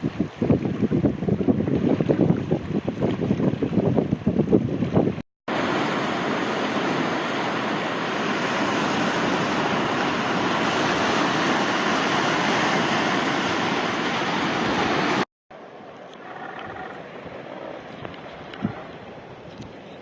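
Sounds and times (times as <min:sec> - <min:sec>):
wind buffeting microphone: 0:00.0 - 0:05.2, 0:16.2 - 0:20.0
boat moving over water: 0:00.0 - 0:20.0.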